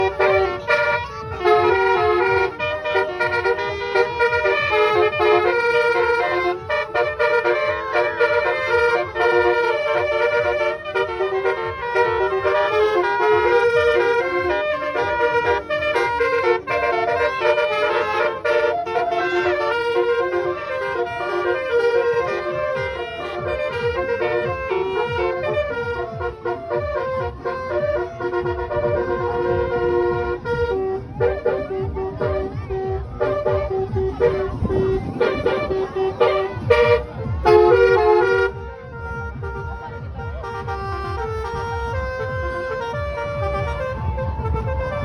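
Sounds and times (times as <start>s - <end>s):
fast low beat: 0.0s - 45.0s
musical bus horn melody: 0.0s - 45.0s.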